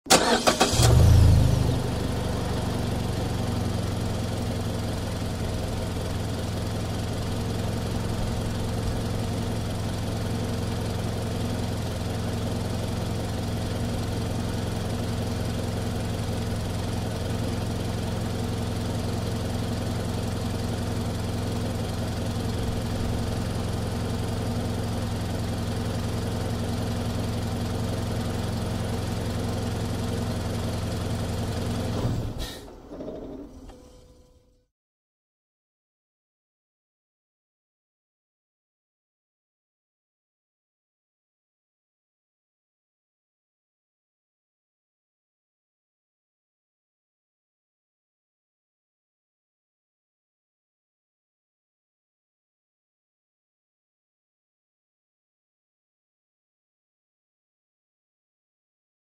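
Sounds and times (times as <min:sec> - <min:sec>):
car engine revving and idling: 0:00.4 - 0:32.4.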